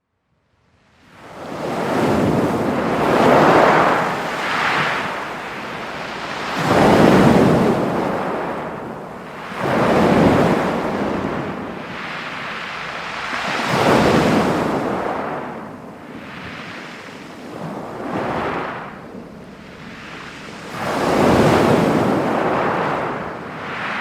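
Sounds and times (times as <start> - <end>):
sea waves breaking on pebbles: 1.7 - 15.3.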